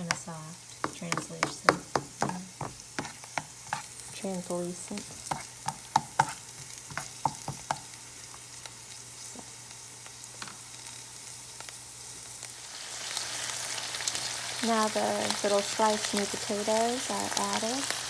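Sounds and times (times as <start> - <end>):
spatula tapping a pan: 0.0 - 3.9, 4.9 - 8.0
onions sizzling in a frying pan: 0.0 - 18.0.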